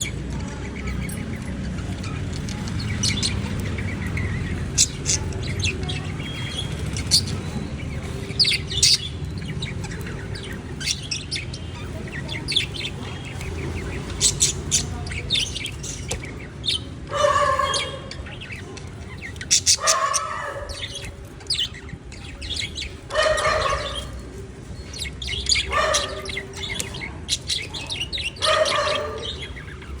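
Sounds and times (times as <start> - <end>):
budgerigars chirping: 0.0 - 30.0.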